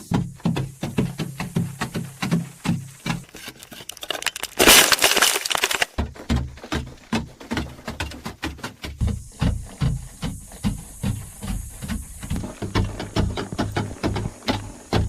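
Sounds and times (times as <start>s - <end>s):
loud crackling crunching noise: 3.3s - 6.0s.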